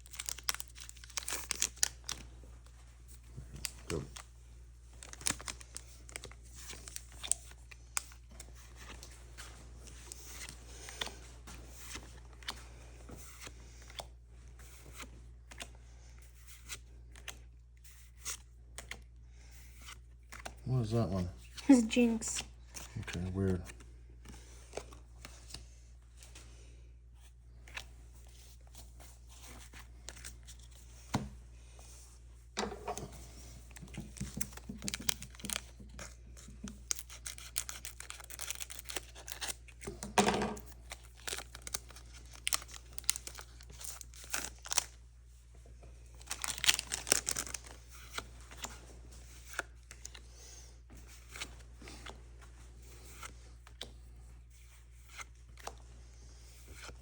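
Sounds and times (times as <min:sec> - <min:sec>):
foil wrapper tearing and crinkling: 0:00.0 - 0:02.2, 0:36.7 - 0:40.0, 0:40.6 - 0:44.9, 0:46.2 - 0:47.8.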